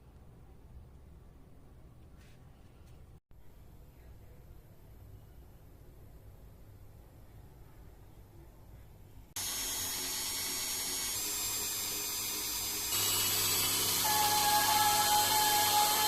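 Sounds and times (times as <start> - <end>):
electric power tool whining: 9.4 - 16.0.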